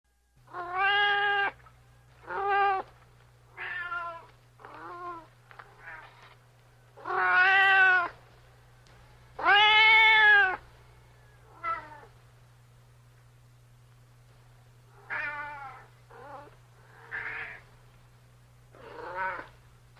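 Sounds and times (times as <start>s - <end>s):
cat meowing: 0.5s - 1.6s, 3.5s - 6.2s, 7.0s - 8.2s, 9.4s - 10.6s, 11.5s - 12.1s, 15.0s - 17.6s, 18.8s - 19.5s.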